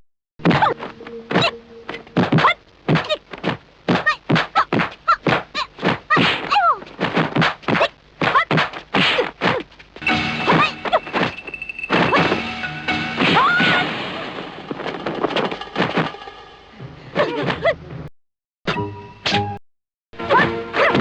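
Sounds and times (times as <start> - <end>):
punch and kick hits: 2.2 - 9.6.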